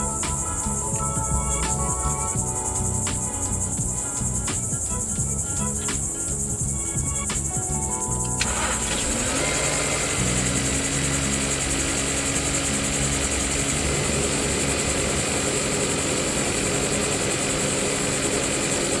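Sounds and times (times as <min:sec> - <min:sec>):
car engine idling: 0:00.0 - 0:19.0.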